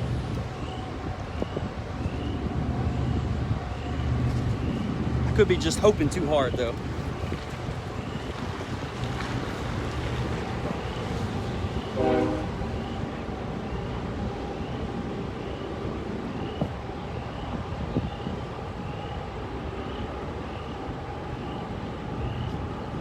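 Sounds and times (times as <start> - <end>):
vehicle rumble: 0.0 - 13.0
wind: 0.0 - 23.0.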